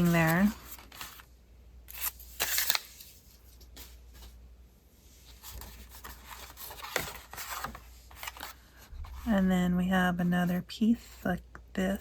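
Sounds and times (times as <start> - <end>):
paper rustling and scraping: 0.0 - 1.3, 1.9 - 4.4, 5.2 - 9.5.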